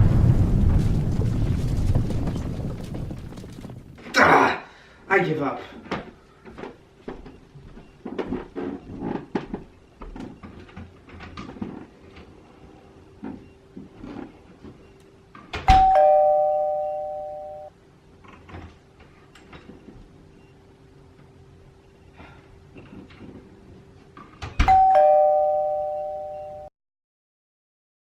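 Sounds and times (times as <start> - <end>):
two-note doorbell chime: 15.7 - 17.7, 24.6 - 26.7.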